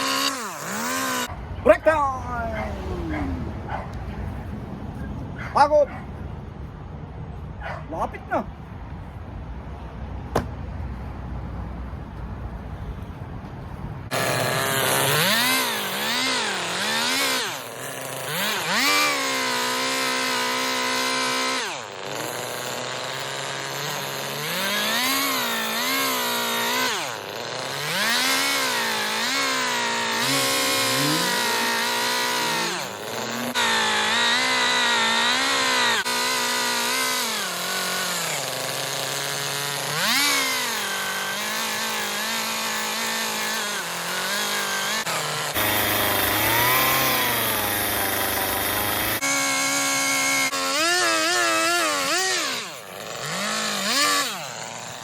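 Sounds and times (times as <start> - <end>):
chainsaw revving: 0.0 - 1.4, 14.1 - 55.0.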